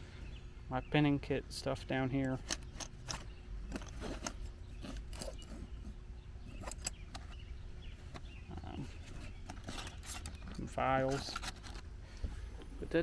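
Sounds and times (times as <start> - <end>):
tools clicking and knocking: 2.2 - 5.6, 6.6 - 7.4, 9.2 - 11.8.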